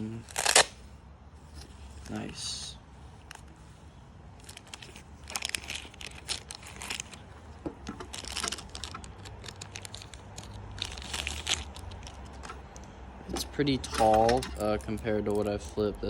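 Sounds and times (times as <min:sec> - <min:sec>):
packaging crinkling and rustling: 0:00.2 - 0:00.8, 0:04.4 - 0:12.8.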